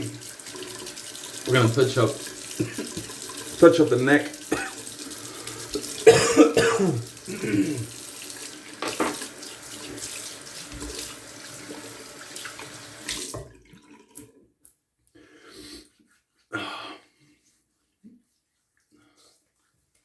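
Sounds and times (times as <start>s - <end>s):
tap running into sink: 1.7s - 3.7s, 8.3s - 13.5s.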